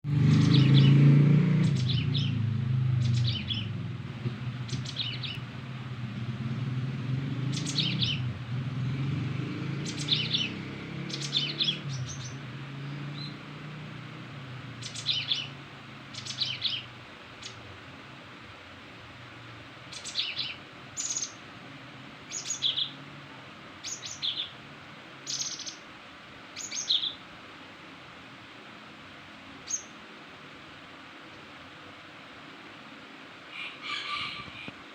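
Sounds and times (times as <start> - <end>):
bird singing high chirps: 0.3 - 1.0, 1.6 - 3.8, 4.6 - 5.4, 7.5 - 8.3, 9.8 - 13.4, 14.8 - 17.6, 19.9 - 21.4, 22.3 - 23.0, 23.8 - 24.6, 25.2 - 25.8, 26.6 - 27.2, 29.6 - 30.0
low steady rumble: 1.6 - 9.0.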